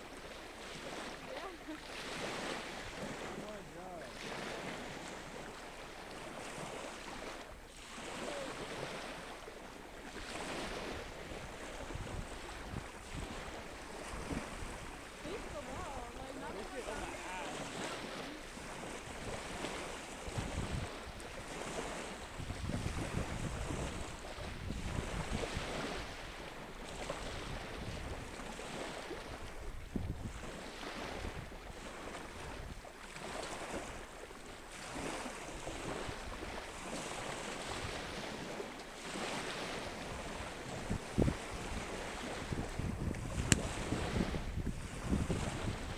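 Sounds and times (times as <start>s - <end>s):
ocean surf washing: 0.0s - 45.9s
wind buffeting microphone: 10.0s - 32.9s, 35.0s - 45.9s.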